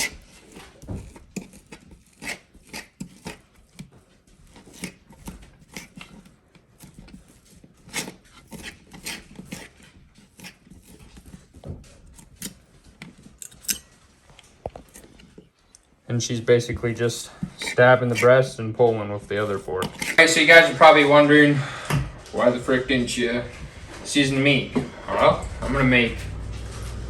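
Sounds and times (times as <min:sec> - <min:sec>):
forks scraping a pan: 0:00.0 - 0:15.5, 0:16.4 - 0:25.8
forks shredding meat: 0:00.0 - 0:15.6, 0:16.6 - 0:21.3.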